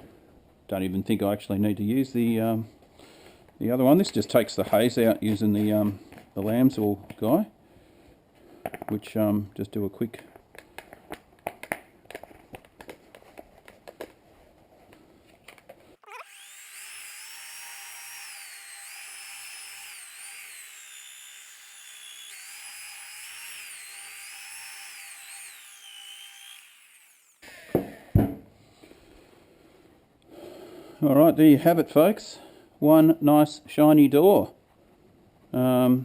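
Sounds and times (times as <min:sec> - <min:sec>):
rotary polisher whining: 0:16.0 - 0:27.9.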